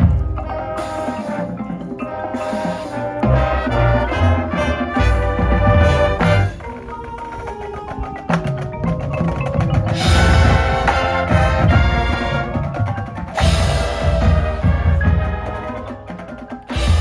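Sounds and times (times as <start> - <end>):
marching band playing: 0.0 - 17.0
marimba and bells: 0.0 - 17.0
drum hits: 8.4 - 15.6.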